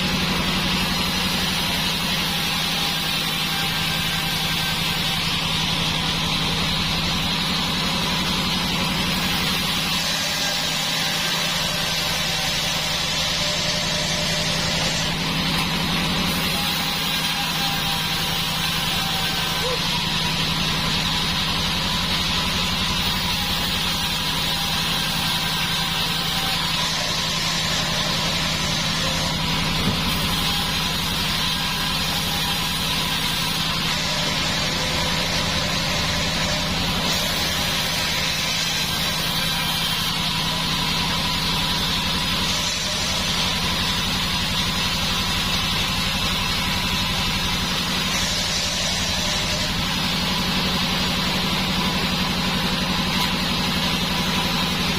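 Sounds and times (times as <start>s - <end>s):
band saw mill droning: 0.0s - 54.9s.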